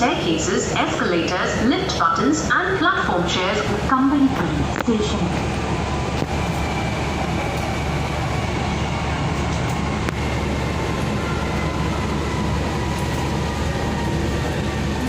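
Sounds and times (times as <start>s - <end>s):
train rumble and hiss: 0.0s - 15.0s.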